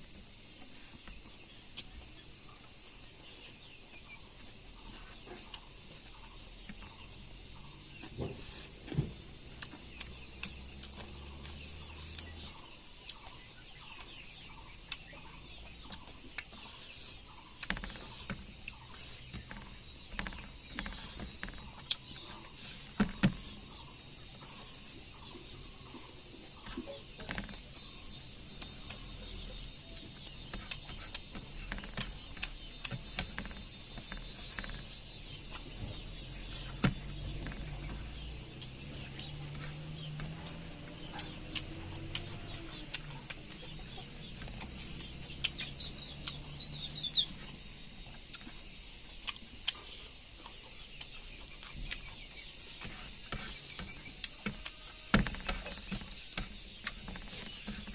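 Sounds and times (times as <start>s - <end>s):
chewing and handling food: 0.0s - 57.9s
insects chirring: 0.0s - 57.9s.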